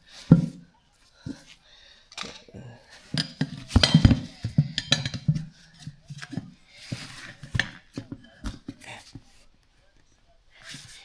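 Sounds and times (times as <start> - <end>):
tools clanking on steel rim: 2.2 - 8.8.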